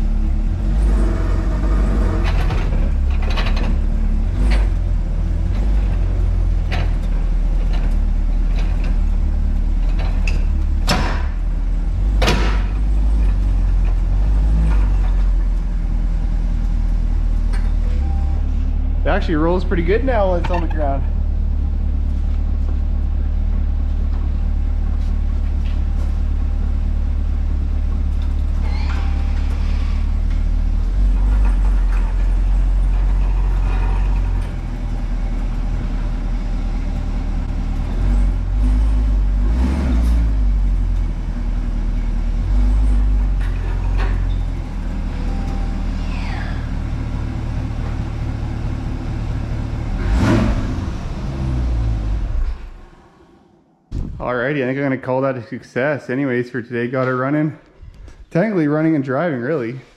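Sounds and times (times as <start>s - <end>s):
car engine deep rumble: 0.0s - 55.2s
brief squeals: 28.6s - 30.2s.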